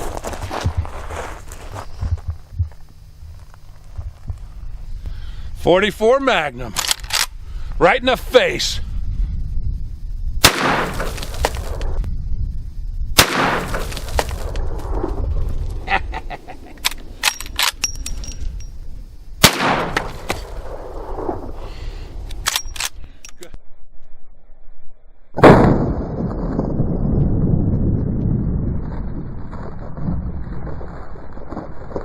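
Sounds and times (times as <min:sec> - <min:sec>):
rifle shots with echo: 0:10.4 - 0:11.6, 0:13.2 - 0:13.9, 0:19.4 - 0:21.5.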